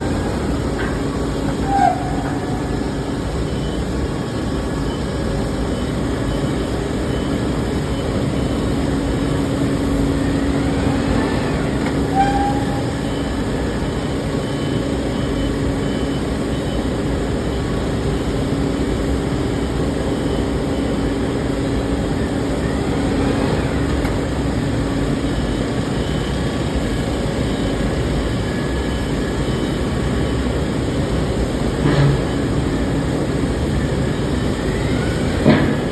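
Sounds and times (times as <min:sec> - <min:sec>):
furnace machinery din: 0:00.0 - 0:16.8, 0:19.5 - 0:35.9
brief squeaks: 0:00.8 - 0:03.0, 0:11.7 - 0:13.3.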